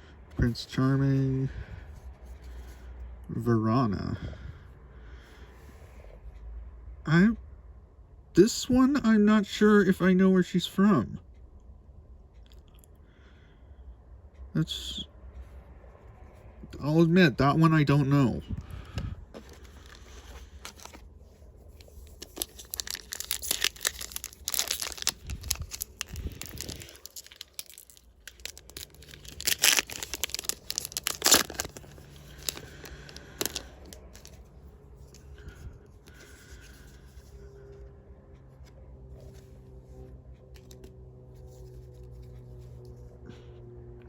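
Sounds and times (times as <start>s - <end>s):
foil wrapper tearing and crinkling: 21.8s - 34.3s.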